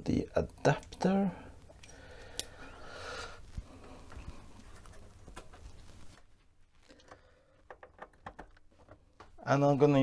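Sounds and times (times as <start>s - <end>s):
small clicks and knocks: 7.0s - 9.4s.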